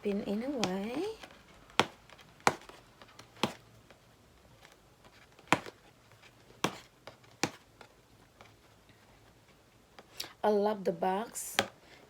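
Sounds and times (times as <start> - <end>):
cardboard box taps and snaps: 1.7 - 3.6, 5.4 - 5.8.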